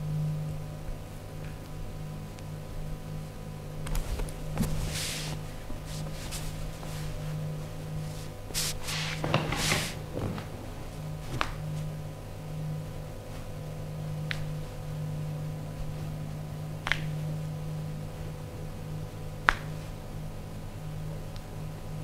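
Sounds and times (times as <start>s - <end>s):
sharp snaps: 14.2s - 14.6s, 16.8s - 17.2s, 19.4s - 19.8s.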